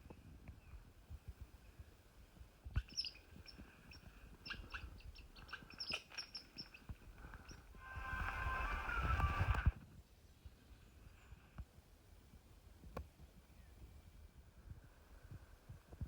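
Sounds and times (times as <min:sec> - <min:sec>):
bird chirping: 0:02.7 - 0:09.7.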